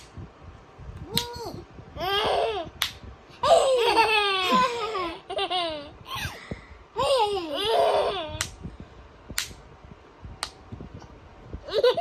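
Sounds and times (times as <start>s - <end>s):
young children laughing: 3.4s - 6.4s, 11.6s - 12.0s.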